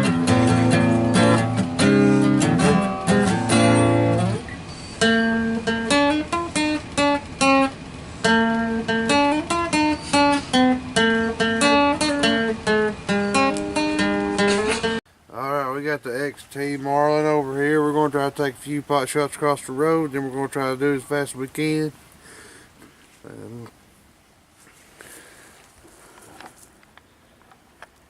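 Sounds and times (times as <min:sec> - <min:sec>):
acoustic guitar picked notes: 0:00.0 - 0:15.0
acoustic guitar strummed chords: 0:00.0 - 0:15.0.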